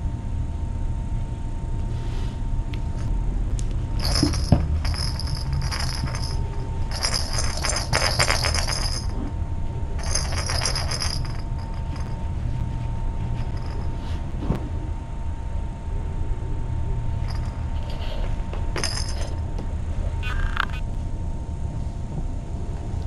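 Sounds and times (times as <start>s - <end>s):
steady low hum: 0.0s - 23.0s
small metallic jingling: 4.0s - 9.2s, 10.0s - 12.2s, 13.4s - 14.0s, 17.2s - 18.0s, 18.8s - 19.4s.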